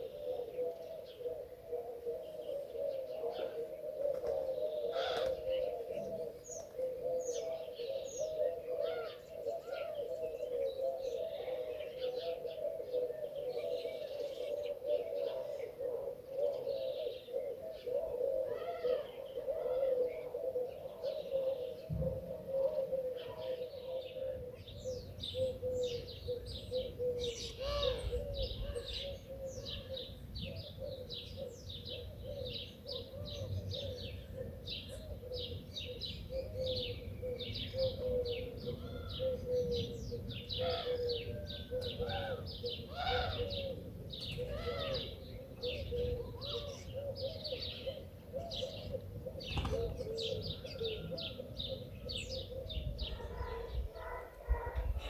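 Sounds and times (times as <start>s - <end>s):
doves cooing: 0.0s - 55.0s
small birds chirping: 23.1s - 55.0s.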